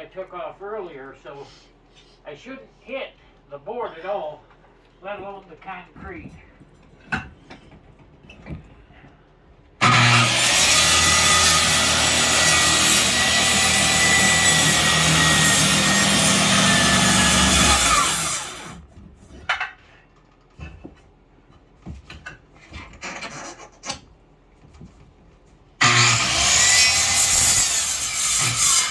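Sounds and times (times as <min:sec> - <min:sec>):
circular saw cutting wood: 0:09.8 - 0:18.8, 0:25.8 - 0:28.9.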